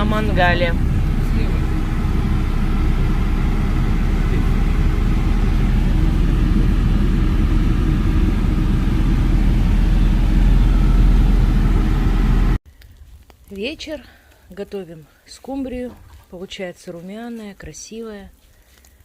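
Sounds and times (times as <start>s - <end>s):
car engine and road noise: 0.0s - 12.6s.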